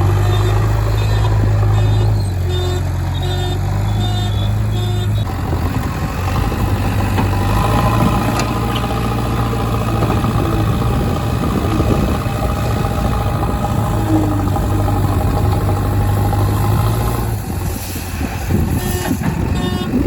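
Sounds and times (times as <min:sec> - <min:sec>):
diesel engine running: 0:00.0 - 0:20.0
electronic beeping: 0:00.2 - 0:05.3.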